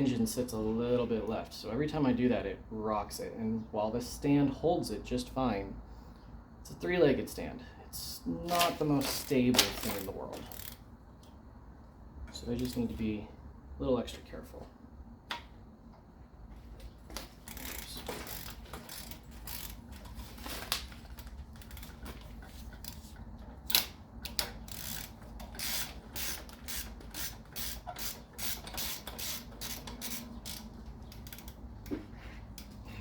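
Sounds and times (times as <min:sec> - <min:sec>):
ratchet wrench clicking: 0:09.0 - 0:10.8, 0:17.4 - 0:20.2, 0:22.8 - 0:31.6.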